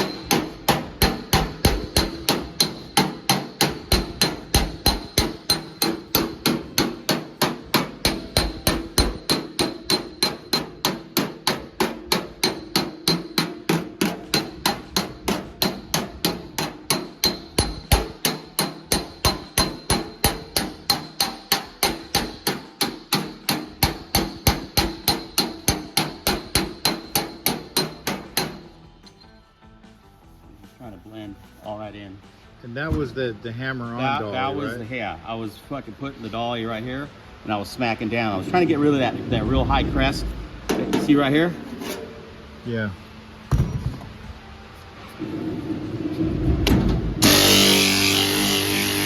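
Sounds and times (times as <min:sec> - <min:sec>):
hammer striking sheet metal: 0:00.0 - 0:28.8, 0:38.1 - 0:42.4, 0:46.6 - 0:49.0.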